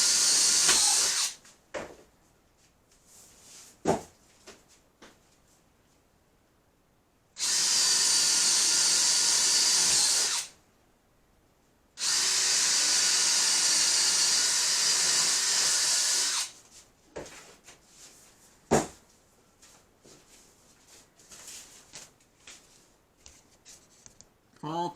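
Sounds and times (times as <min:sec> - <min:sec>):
power drill boring cardboard: 0:00.0 - 0:01.4, 0:07.4 - 0:10.5, 0:12.0 - 0:16.6.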